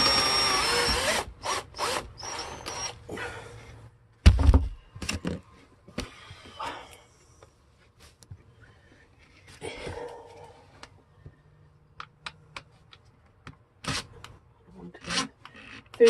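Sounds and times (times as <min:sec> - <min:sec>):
power drill driving a screw: 0:00.0 - 0:03.0
loud thump: 0:04.2 - 0:04.8.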